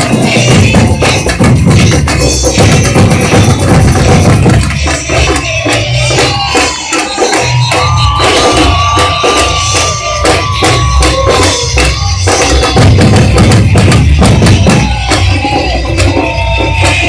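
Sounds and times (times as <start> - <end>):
samba drum ensemble: 0.0 - 17.0
steady high tone: 5.4 - 12.9
deep bass drums: 8.8 - 17.0.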